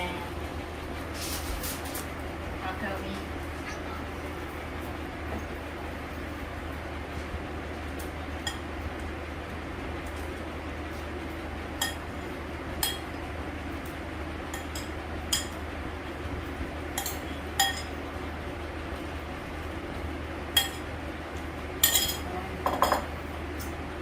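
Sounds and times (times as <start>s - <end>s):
steady low hum: 0.0s - 24.0s
metal spoon clinking on dish: 17.0s - 17.9s, 21.8s - 23.1s.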